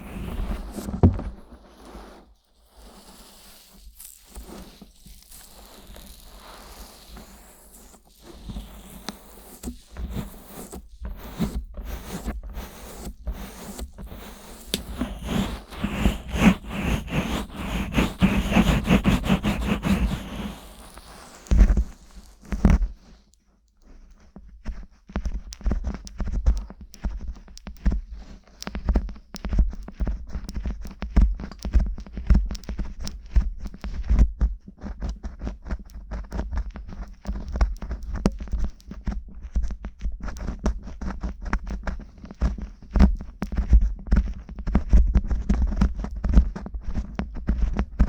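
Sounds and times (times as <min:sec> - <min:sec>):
heavy muffled thumps: 0:00.0 - 0:01.5
fingers rubbing microphone: 0:00.0 - 0:23.0.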